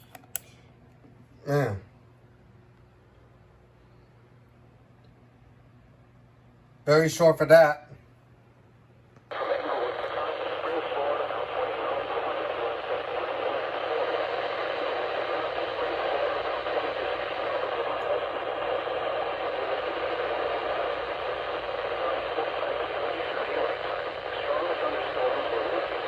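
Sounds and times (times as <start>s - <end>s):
radio static hiss: 9.3s - 26.0s.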